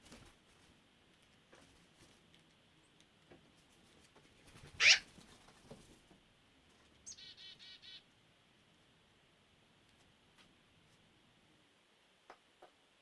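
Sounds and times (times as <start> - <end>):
harsh bird call: 4.8 - 5.1
magpie chattering: 4.8 - 5.1.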